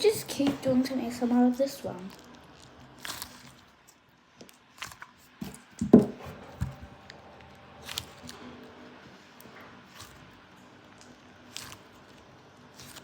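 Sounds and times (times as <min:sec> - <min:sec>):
slime squishy being squeezed: 0:02.1 - 0:03.7.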